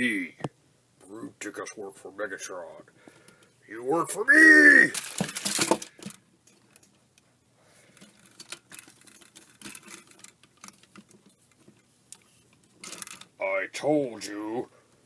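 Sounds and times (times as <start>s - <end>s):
plastic action figures clicking: 4.8s - 6.2s, 8.0s - 11.3s, 12.8s - 13.4s.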